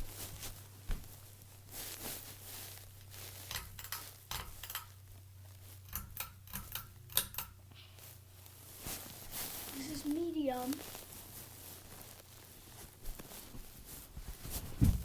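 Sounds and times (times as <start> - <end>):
ceiling fan motor hum: 0.0 - 15.0
sharp clicks and metallic ticks: 3.5 - 5.0, 5.9 - 7.6.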